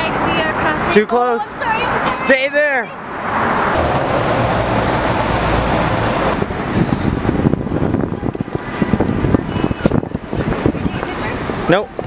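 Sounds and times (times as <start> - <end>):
traffic noise: 0.0 - 12.0
vehicle passing close by: 3.0 - 9.5.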